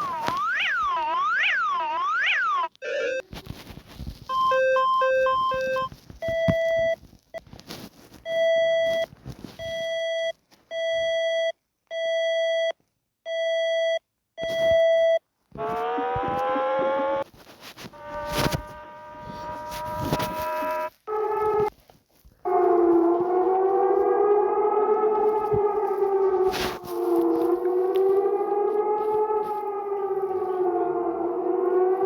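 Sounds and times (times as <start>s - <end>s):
electronic alert tones: 0.0s - 3.3s, 4.3s - 7.0s.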